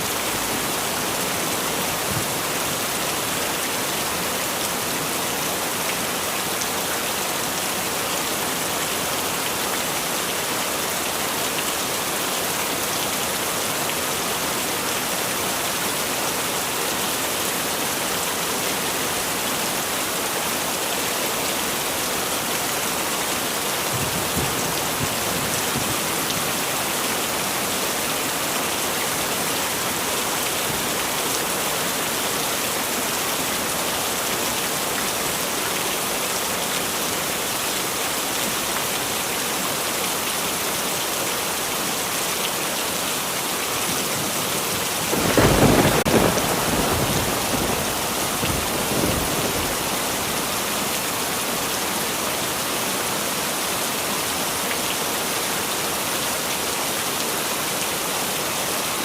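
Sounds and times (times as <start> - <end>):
heavy rain: 0.0 - 59.0.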